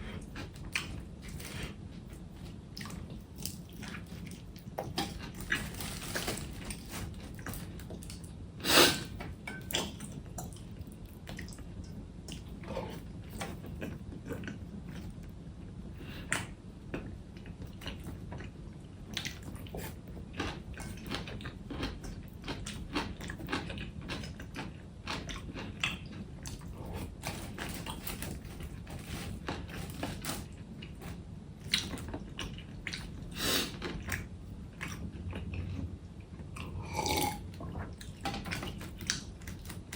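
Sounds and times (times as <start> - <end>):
person biting and chewing: 36.6 - 37.4.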